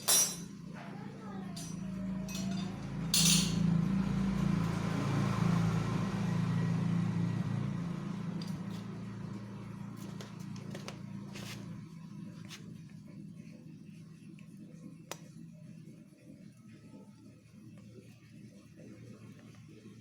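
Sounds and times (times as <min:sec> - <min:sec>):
engine humming: 0:01.4 - 0:12.5.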